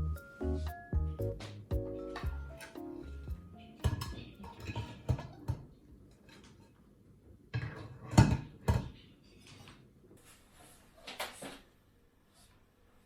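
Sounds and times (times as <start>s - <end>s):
kitchenware knocks and clinks: 3.8s - 5.7s, 7.6s - 9.0s.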